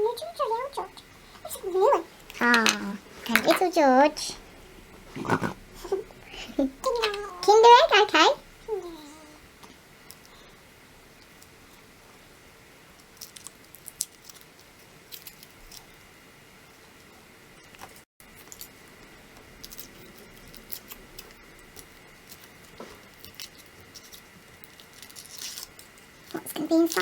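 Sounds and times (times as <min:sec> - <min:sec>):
foil wrapper crinkling: 0:17.8 - 0:27.0.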